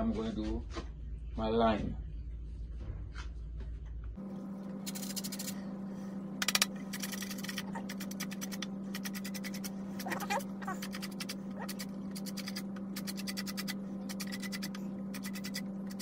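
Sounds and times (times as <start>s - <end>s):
steady low hum: 0.0s - 16.0s
lime rasping on a grater: 6.9s - 16.0s.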